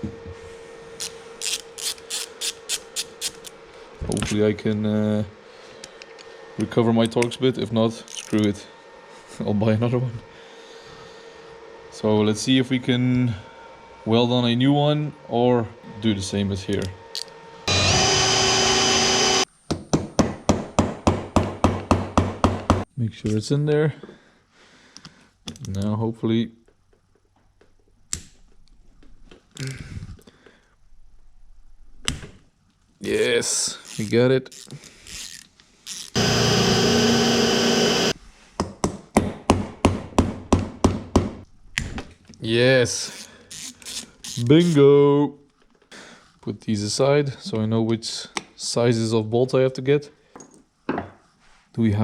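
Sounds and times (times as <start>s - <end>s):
electric drill boring: 17.1s - 19.5s, 35.9s - 38.2s.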